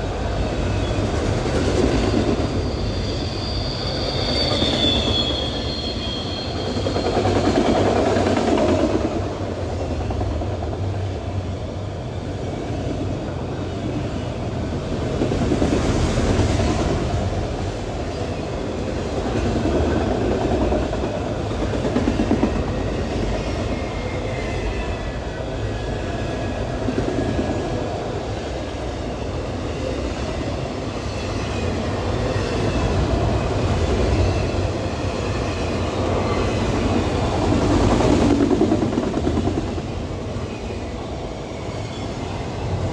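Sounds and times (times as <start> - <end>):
wheels squealing: 0.0 - 8.0.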